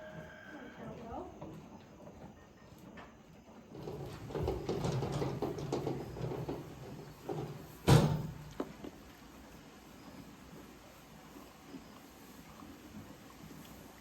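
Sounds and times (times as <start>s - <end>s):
rattling and knocking: 3.8s - 8.5s.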